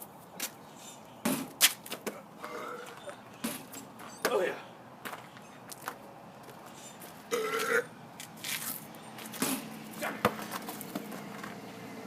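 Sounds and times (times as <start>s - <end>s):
man burping: 2.4s - 3.2s, 7.3s - 7.9s.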